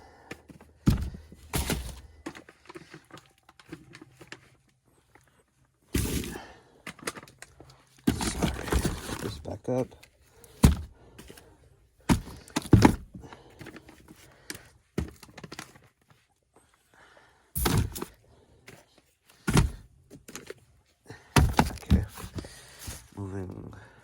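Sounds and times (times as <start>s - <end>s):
thuds and knocks of objects handled: 0.3s - 4.5s, 5.9s - 7.2s, 8.0s - 9.5s, 10.4s - 15.8s, 17.6s - 23.2s.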